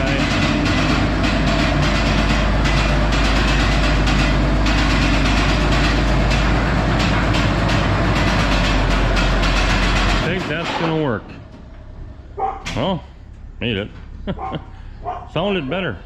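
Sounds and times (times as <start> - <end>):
tractor diesel engine running: 0.0 - 16.0.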